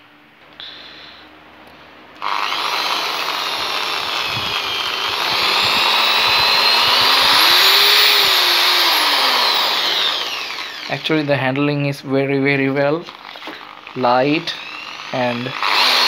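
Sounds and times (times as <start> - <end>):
electric drill motor whine: 2.2 - 11.3, 13.1 - 16.0.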